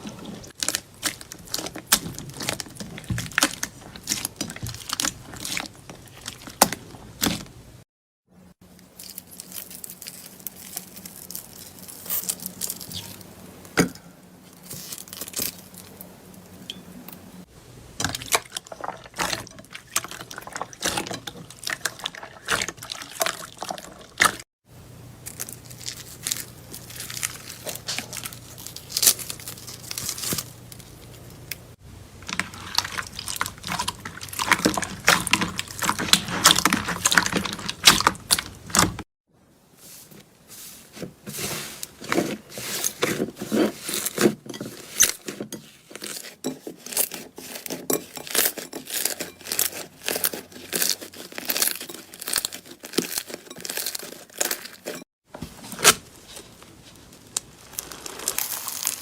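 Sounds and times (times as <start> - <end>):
slime squished by hand: 57.2 - 59.0.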